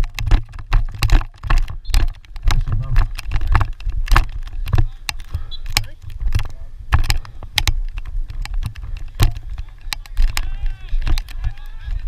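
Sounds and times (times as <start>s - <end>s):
sticks and ball clacking: 0.0s - 12.0s
faint voices: 8.8s - 12.0s.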